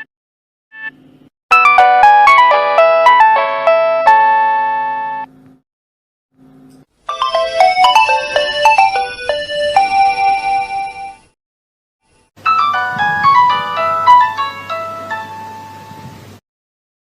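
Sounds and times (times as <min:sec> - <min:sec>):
mobile phone ringtone melody: 0:01.5 - 0:05.3, 0:07.1 - 0:11.2, 0:12.4 - 0:15.6.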